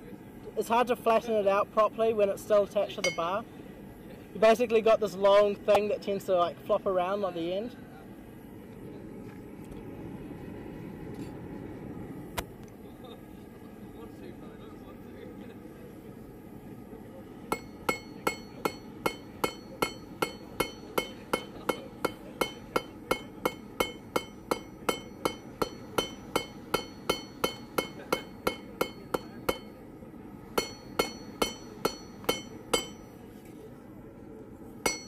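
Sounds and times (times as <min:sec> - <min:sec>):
hammer striking steel on anvil: 0:03.0 - 0:03.4, 0:17.5 - 0:29.8, 0:30.6 - 0:33.2.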